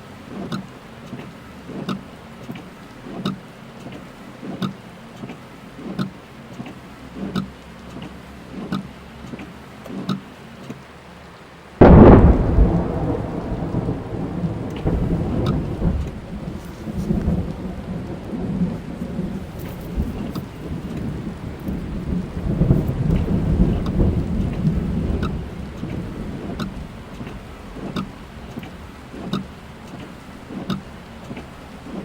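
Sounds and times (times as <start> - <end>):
rain falling on a car: 0.0 - 32.0
rolling thunder: 11.8 - 29.7
thunderclap: 11.8 - 32.0.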